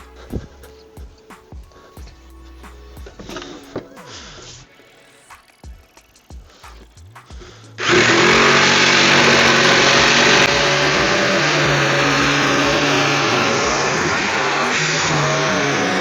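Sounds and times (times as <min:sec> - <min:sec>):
electric power saw cutting wood: 0:07.8 - 0:16.0.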